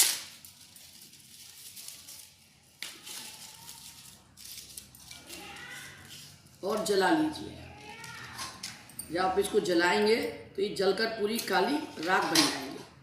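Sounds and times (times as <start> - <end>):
dry leaves crackling in a bowl: 0.0 - 8.5.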